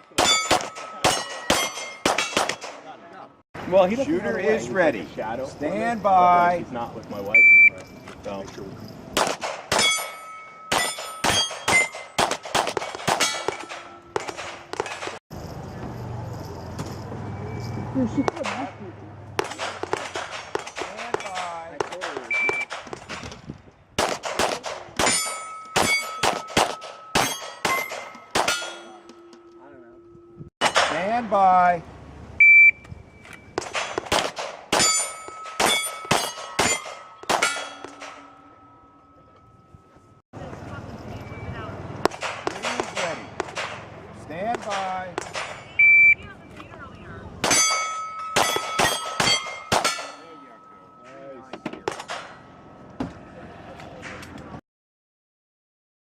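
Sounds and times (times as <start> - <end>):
steel targets ringing: 0.0 - 2.8, 9.7 - 15.2, 25.0 - 31.2, 34.7 - 40.2, 47.4 - 52.6
pistol shots: 0.2 - 2.9, 9.2 - 10.1, 10.7 - 15.2, 19.4 - 23.2, 24.0 - 28.9, 33.6 - 38.2, 42.0 - 43.9, 48.4 - 50.2.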